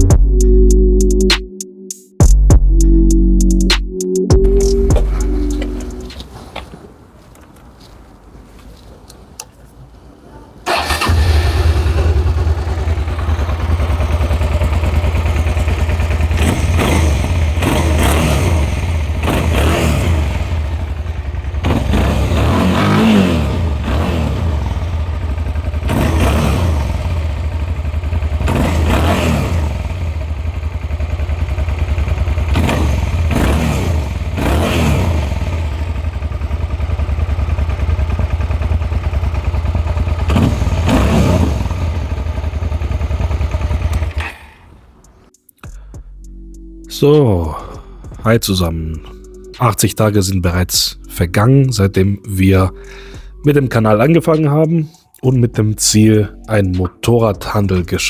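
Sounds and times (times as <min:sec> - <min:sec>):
motorcycle engine starting: 0:10.6 - 0:45.3
motorcycle engine revving: 0:10.7 - 0:45.2.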